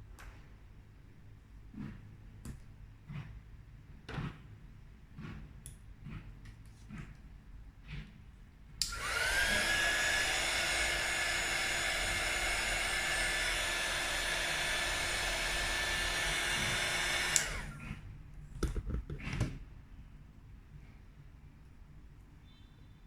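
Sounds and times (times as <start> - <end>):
heat gun fan whine: 8.8 - 18.0.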